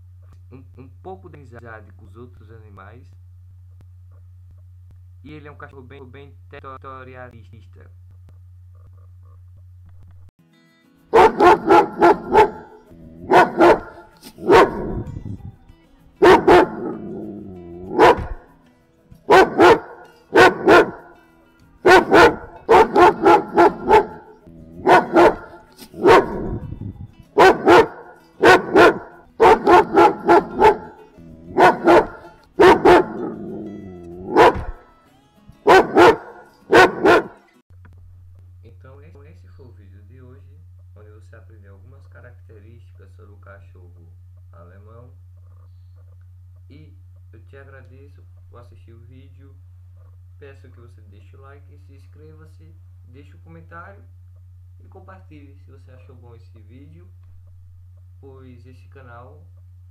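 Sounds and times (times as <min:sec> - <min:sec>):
dog barking loudly: 0:11.1 - 0:15.2, 0:16.2 - 0:18.5, 0:19.3 - 0:21.2, 0:21.8 - 0:26.7, 0:27.4 - 0:34.8, 0:35.6 - 0:37.5.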